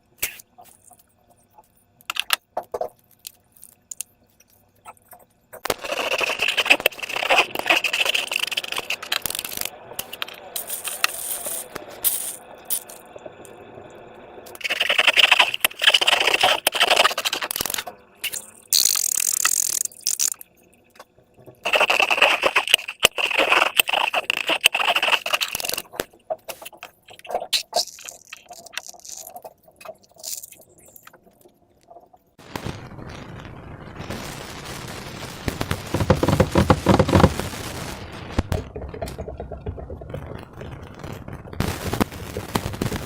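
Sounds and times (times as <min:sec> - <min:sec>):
slime and balloons squishing: 0:05.6 - 0:12.9, 0:14.5 - 0:20.4, 0:21.6 - 0:31.0, 0:35.6 - 0:37.5.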